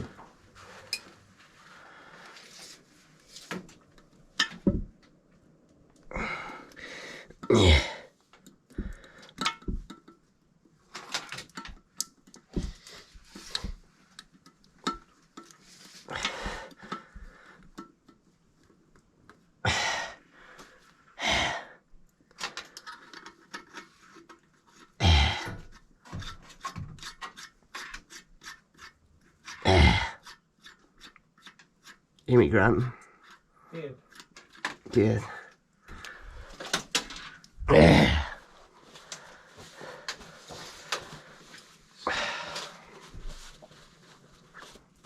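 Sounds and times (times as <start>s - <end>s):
person breathing hard and grunting: 6.1s - 8.2s, 16.1s - 17.6s, 19.6s - 21.8s, 25.0s - 25.6s, 29.6s - 30.2s, 37.6s - 38.5s, 42.0s - 43.0s
tools scraping and clicking: 10.9s - 18.3s, 22.3s - 32.3s, 33.0s - 34.9s.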